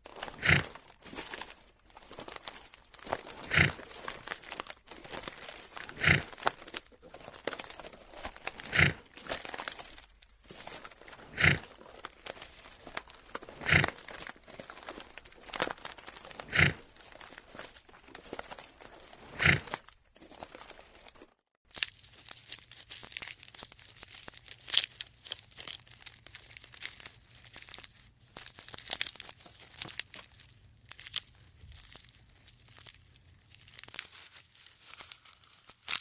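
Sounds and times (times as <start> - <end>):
heavy crunching footsteps: 0.0 - 21.3.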